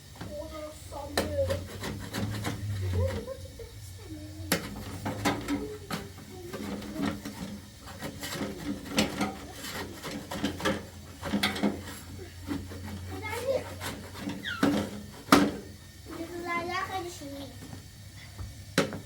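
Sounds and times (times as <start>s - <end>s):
household objects clattering: 4.5s - 16.4s.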